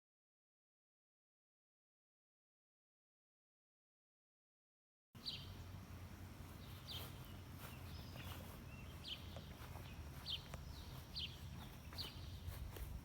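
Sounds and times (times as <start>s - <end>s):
bird chirping: 5.2s - 13.0s.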